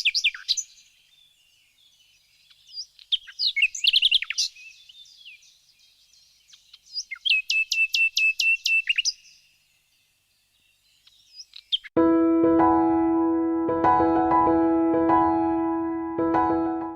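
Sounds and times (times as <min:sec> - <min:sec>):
whistled bird notes: 0:00.0 - 0:05.5, 0:06.1 - 0:09.4
small birds chirping: 0:00.0 - 0:12.0
piano chord: 0:12.0 - 0:16.9.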